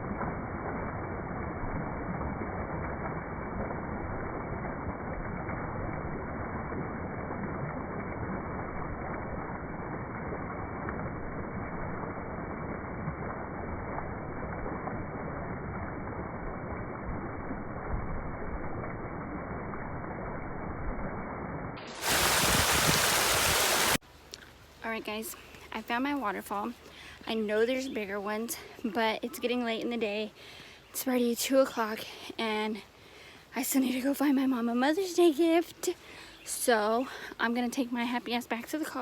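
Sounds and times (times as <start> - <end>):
water rushing in a creek: 0.0 - 24.8.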